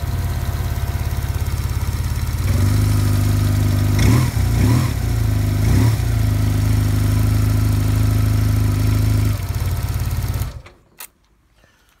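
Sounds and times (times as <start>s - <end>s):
engine idling: 0.0s - 4.1s, 6.1s - 10.6s.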